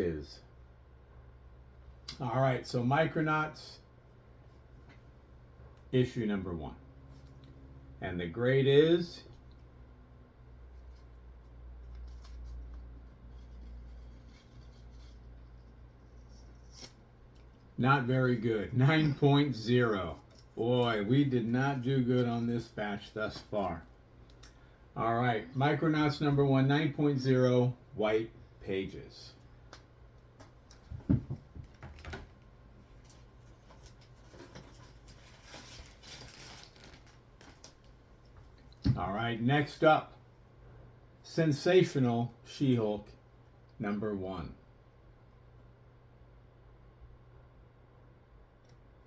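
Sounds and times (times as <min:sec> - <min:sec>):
low room hum: 0:00.0 - 0:49.0
soft rustle: 0:32.8 - 0:38.7.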